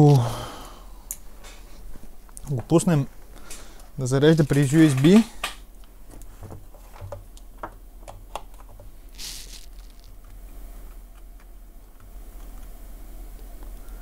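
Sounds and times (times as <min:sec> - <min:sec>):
low electrical hum: 0:00.0 - 0:14.0
small objects clicking and tapping: 0:04.4 - 0:06.3.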